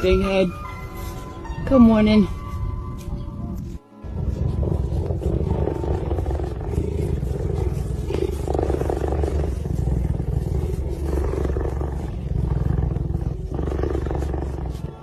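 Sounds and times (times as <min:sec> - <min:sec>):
big cat low rough rumble: 0:03.4 - 0:15.0.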